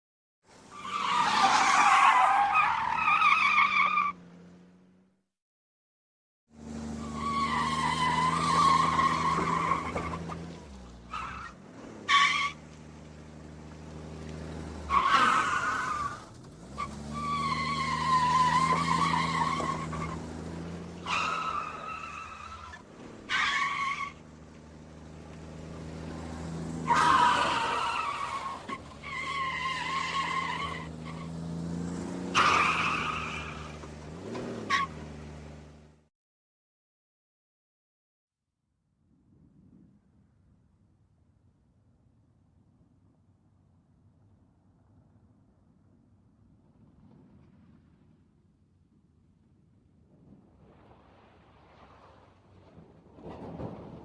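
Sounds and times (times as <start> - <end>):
car tyres squealing: 0.6 - 4.3, 6.6 - 35.6
low engine hum: 6.6 - 14.9, 24.1 - 29.1.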